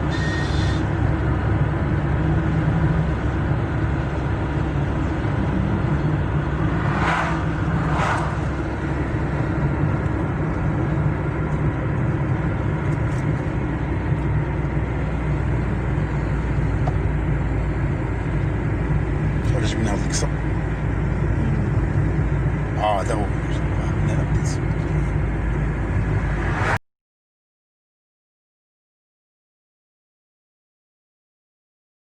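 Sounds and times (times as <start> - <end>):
car engine and road noise: 0.0 - 26.8
brief swishes: 6.6 - 8.9.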